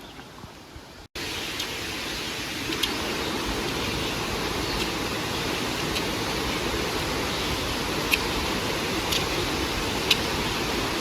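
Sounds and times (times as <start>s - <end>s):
creek rushing: 0.0s - 11.0s
faint sharp clicks: 2.7s - 3.0s, 8.1s - 8.3s, 10.0s - 10.3s.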